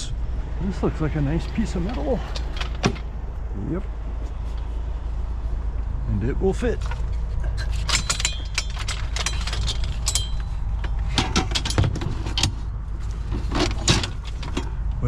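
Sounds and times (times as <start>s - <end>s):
van engine rumble: 0.0s - 15.0s
scrap metal clanking: 6.8s - 14.8s.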